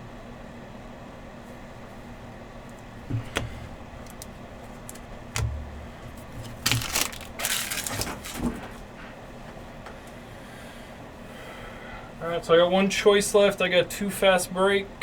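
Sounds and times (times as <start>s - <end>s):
crinkly packaging rustling: 3.2s - 8.8s.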